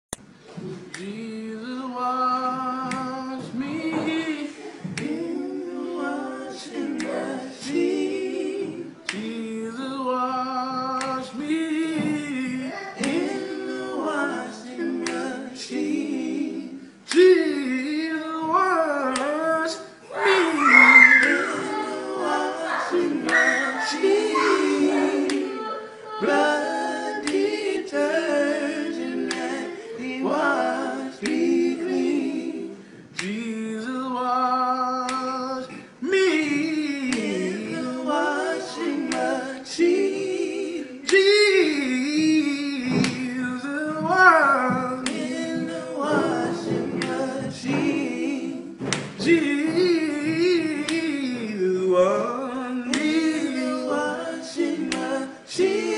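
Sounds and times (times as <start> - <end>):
men singing a cappella: 0.8 - 55.9.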